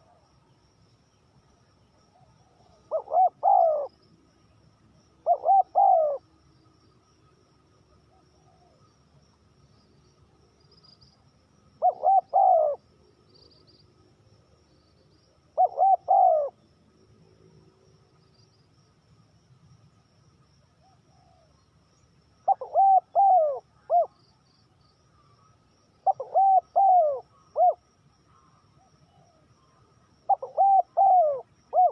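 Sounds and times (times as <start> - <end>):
dove cooing: 2.2 - 4.0, 5.2 - 6.2, 11.8 - 12.8, 15.6 - 16.6, 20.8 - 21.5, 22.5 - 24.2, 26.0 - 27.8, 30.3 - 31.9.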